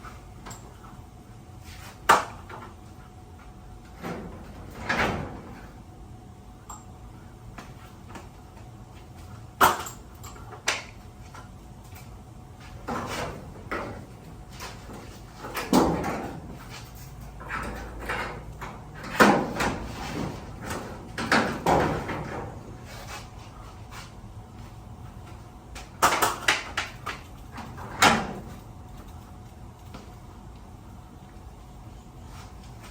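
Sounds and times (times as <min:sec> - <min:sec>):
garage door knocks clanks and scrapes: 0:03.9 - 0:05.8, 0:12.8 - 0:23.4, 0:27.6 - 0:28.6.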